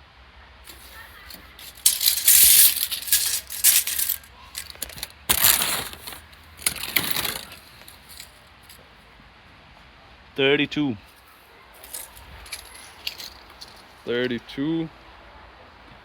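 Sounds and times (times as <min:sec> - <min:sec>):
metal tape measure rattling: 0:00.7 - 0:08.4, 0:11.8 - 0:13.8.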